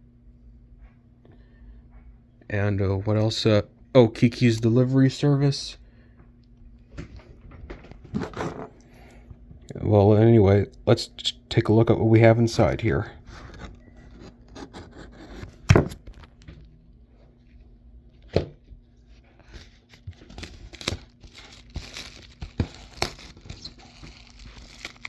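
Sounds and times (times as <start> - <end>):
packaging tearing and crinkling: 19.6 - 25.0.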